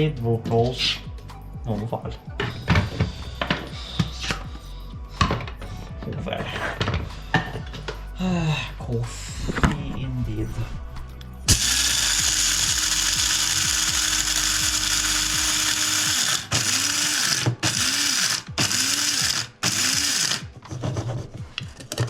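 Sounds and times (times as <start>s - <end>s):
electric coffee grinder grinding: 11.5s - 20.6s.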